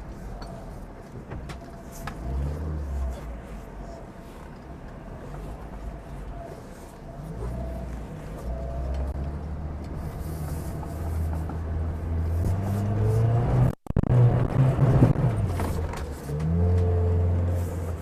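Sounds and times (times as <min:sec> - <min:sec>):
engine revving under load: 0:02.1 - 0:03.6, 0:07.1 - 0:18.0.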